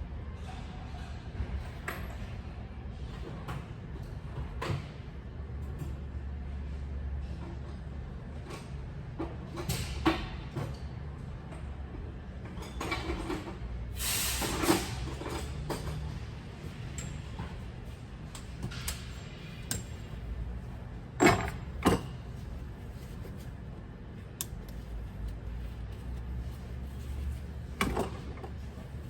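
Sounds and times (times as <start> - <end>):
steady low hum: 16.1 - 29.0.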